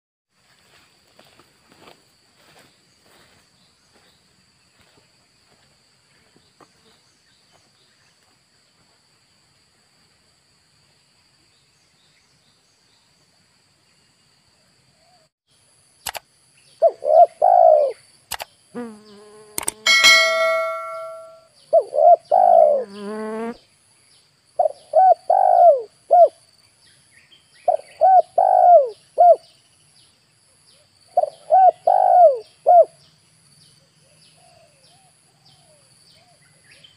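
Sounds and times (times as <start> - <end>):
dove cooing: 16.8 - 18.0, 21.8 - 22.9, 24.6 - 26.3, 27.7 - 29.4, 31.2 - 32.9
metallic ding: 19.9 - 21.4.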